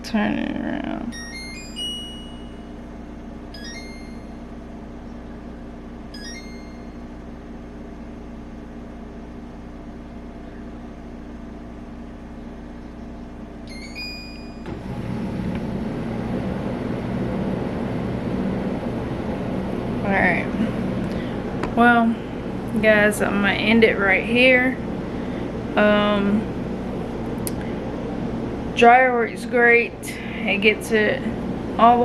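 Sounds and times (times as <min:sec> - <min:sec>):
dryer drum motor whirring: 0:00.0 - 0:32.0
steady hum: 0:00.0 - 0:32.0
electronic button beeps: 0:03.5 - 0:04.4, 0:06.2 - 0:07.0, 0:13.7 - 0:14.7.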